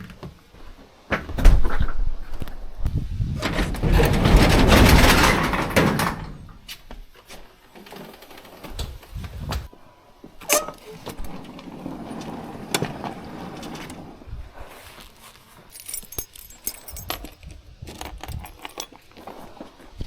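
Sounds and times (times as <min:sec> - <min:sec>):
door sliding open with scrape: 0:03.3 - 0:06.7, 0:10.4 - 0:15.1.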